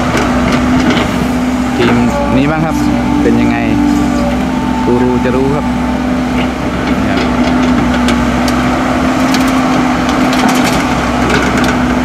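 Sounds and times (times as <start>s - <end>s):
excavator diesel engine: 0.0s - 12.0s
dirt cracking and clattering: 7.2s - 12.0s.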